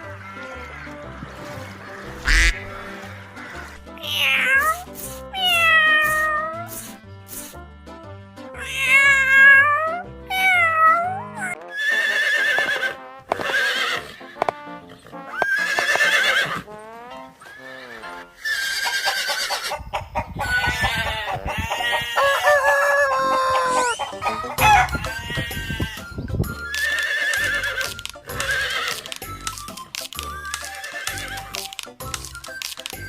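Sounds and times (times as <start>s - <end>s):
farm animal calls: 0.0s - 4.8s, 17.4s - 29.3s
background music: 0.0s - 33.0s.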